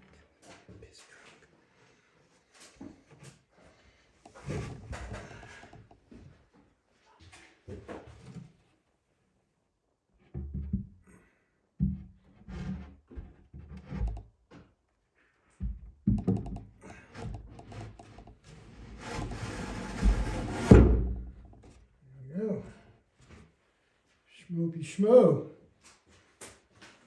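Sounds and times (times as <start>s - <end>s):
hollow wooden knocks: 4.2s - 6.2s, 10.3s - 11.0s, 11.8s - 14.7s, 15.6s - 21.8s.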